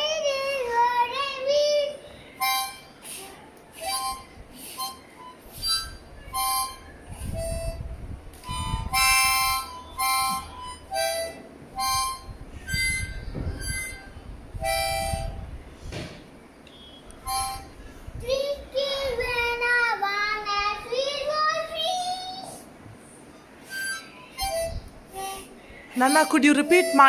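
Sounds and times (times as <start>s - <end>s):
harmonica notes: 2.3s - 15.6s, 16.7s - 18.6s, 23.6s - 27.0s.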